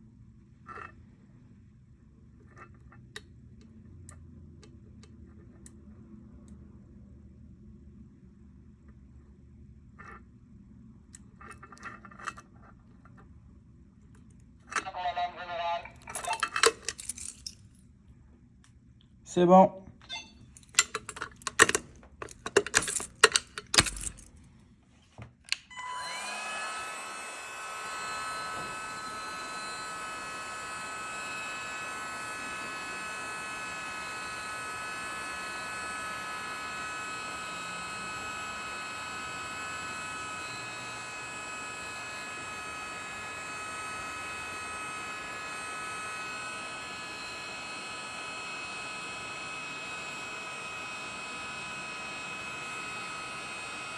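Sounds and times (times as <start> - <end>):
clicks and rattles: 20.6 - 24.4.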